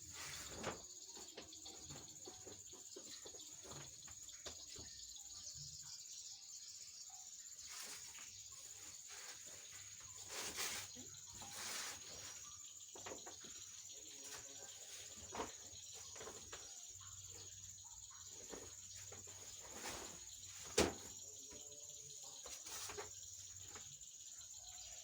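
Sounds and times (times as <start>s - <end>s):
high-pitched insect trill: 0.0s - 25.0s
short rustling: 7.7s - 12.5s.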